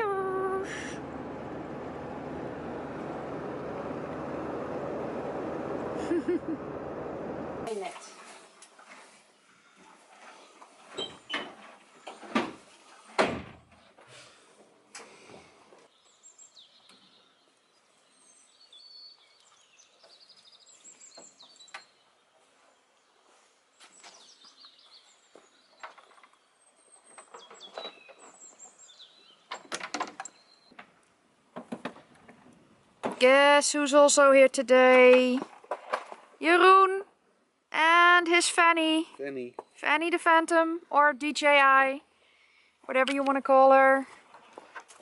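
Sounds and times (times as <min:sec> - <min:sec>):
small birds chirping: 0:15.8 - 0:30.8.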